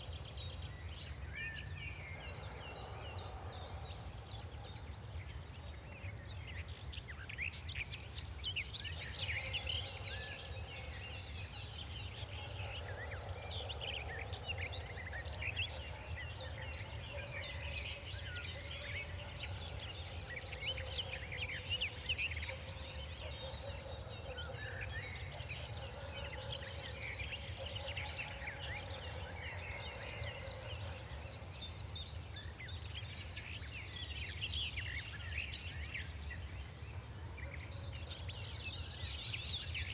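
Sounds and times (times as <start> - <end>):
many birds chirping: 0.0 - 39.9.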